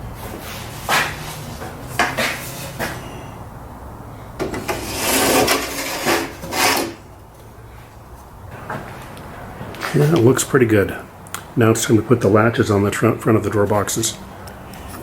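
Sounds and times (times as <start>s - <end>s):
drawer sliding and scraping: 4.4s - 7.0s.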